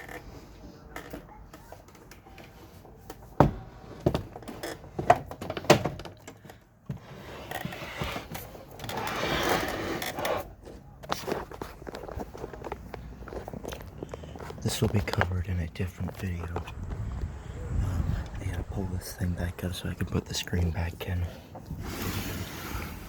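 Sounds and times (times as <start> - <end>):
scraping rub: 21.4 - 23.0.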